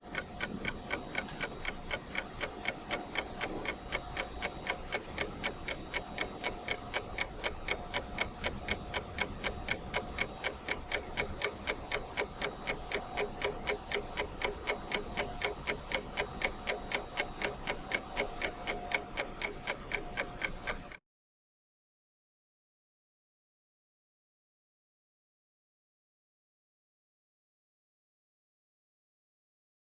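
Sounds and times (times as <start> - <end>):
clock ticking: 0.0 - 21.0.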